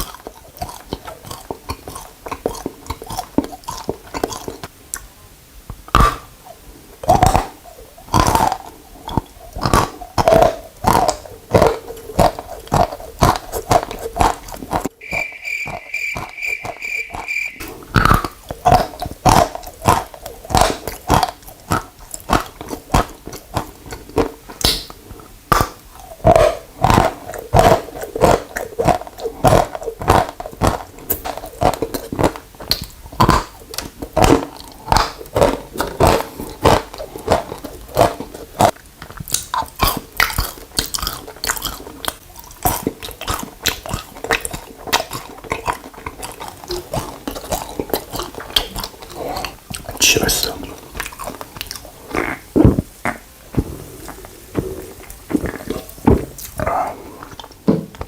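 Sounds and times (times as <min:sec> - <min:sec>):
hard crunching bites and chews: 0:00.0 - 0:04.7, 0:05.9 - 0:06.3, 0:07.0 - 0:53.3, 0:54.1 - 0:57.5
quick high beeps: 0:15.0 - 0:17.6.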